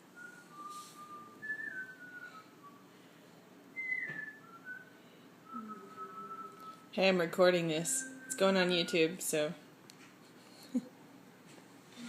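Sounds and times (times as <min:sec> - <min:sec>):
person whistling a tune: 0:00.2 - 0:02.9, 0:03.8 - 0:06.9, 0:07.9 - 0:08.5.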